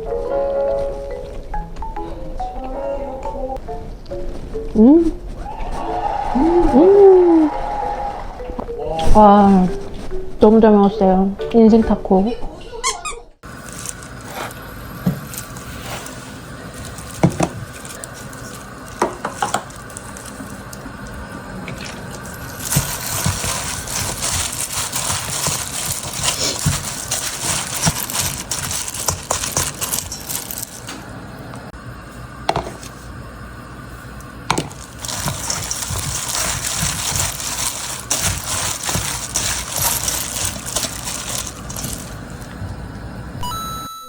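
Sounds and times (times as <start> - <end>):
plastic packaging rustling: 13.4 - 31.2, 34.5 - 43.4.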